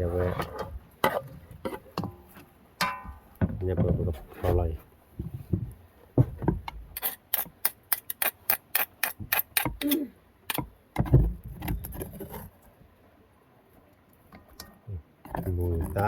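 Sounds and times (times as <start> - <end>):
handling knocks and thuds: 2.8 - 6.8.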